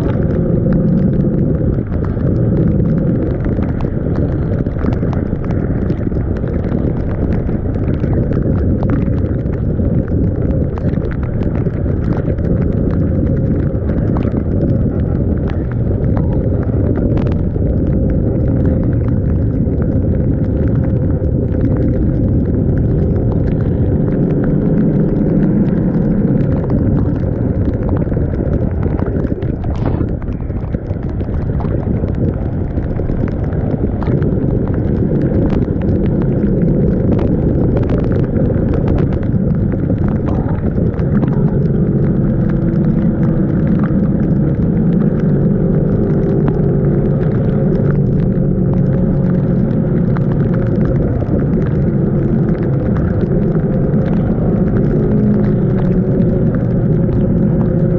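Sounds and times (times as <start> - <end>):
rain ticking on camera: 0.0 - 57.9
wind rushing over microphone: 0.0 - 57.9.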